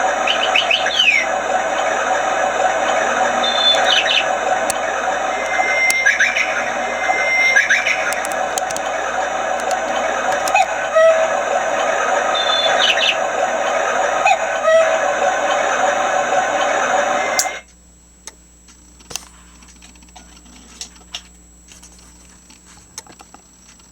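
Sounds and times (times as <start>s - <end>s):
bird calls: 0.0s - 17.6s
rushing water hiss: 0.0s - 17.6s.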